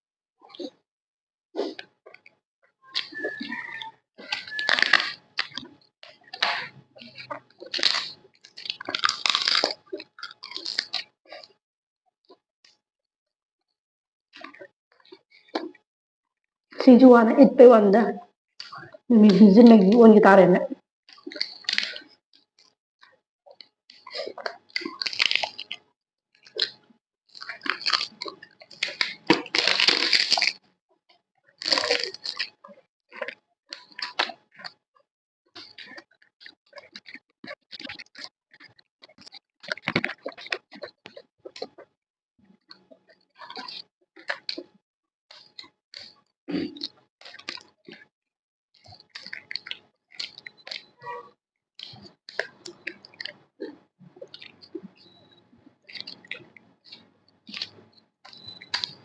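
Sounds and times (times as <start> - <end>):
crunching crisp fried snacks: 3.0 - 5.7, 6.3 - 11.5, 21.1 - 22.1, 24.1 - 25.8, 27.4 - 30.6, 31.6 - 32.5, 33.1 - 34.8, 35.6 - 41.7, 45.3 - 48.0, 48.8 - 51.0, 55.9 - 56.5, 57.5 - 59.0
mouth sounds: 19.1 - 20.8.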